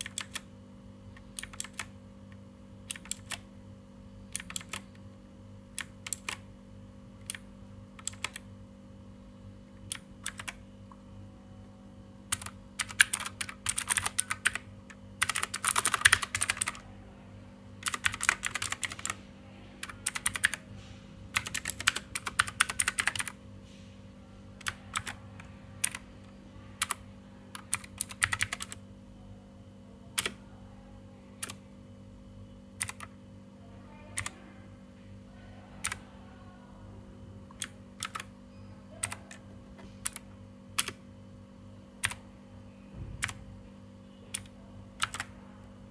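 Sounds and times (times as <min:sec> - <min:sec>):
mechanical keyboard typing: 0:00.0 - 0:00.5, 0:01.1 - 0:01.9, 0:02.9 - 0:03.4, 0:04.3 - 0:05.0, 0:05.7 - 0:06.4, 0:07.2 - 0:08.5, 0:09.9 - 0:10.6, 0:12.3 - 0:16.8, 0:17.8 - 0:19.2, 0:19.8 - 0:20.6, 0:21.3 - 0:23.4, 0:24.6 - 0:26.0, 0:26.8 - 0:28.8, 0:30.2 - 0:30.4, 0:31.4 - 0:31.6, 0:32.8 - 0:33.1, 0:34.2 - 0:34.4, 0:35.8 - 0:36.1, 0:37.5 - 0:38.3, 0:38.9 - 0:41.0, 0:42.0 - 0:42.2, 0:43.2 - 0:43.4, 0:44.3 - 0:45.3.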